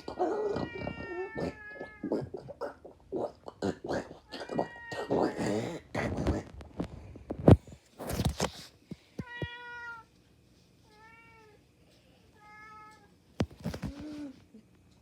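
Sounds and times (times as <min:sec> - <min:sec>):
cat meowing: 0:12.4 - 0:13.1.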